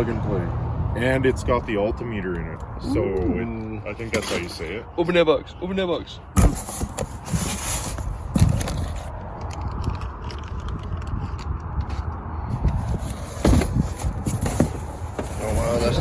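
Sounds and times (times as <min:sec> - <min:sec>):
cardboard box scraping and crackling: 0:06.4 - 0:09.2, 0:12.6 - 0:16.0.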